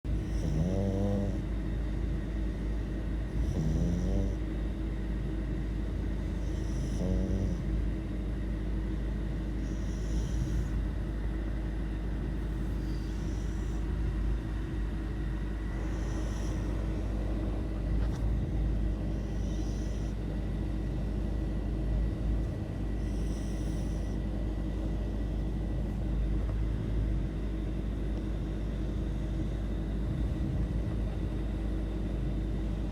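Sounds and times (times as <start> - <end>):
dog snoring: 0.1 - 8.2, 8.8 - 11.0, 12.3 - 20.4, 22.3 - 26.0, 28.2 - 31.1.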